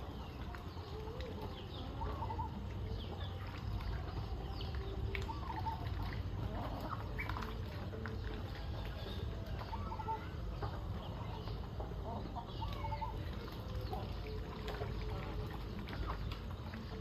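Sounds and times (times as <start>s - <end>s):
chickens clucking: 0.0s - 17.0s.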